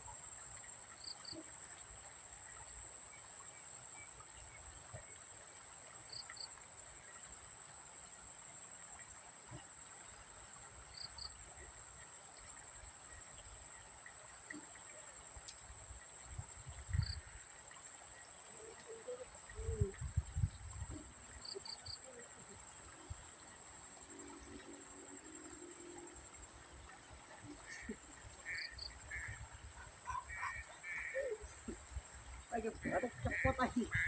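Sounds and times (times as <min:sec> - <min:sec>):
crickets trilling: 0:08.0 - 0:34.0.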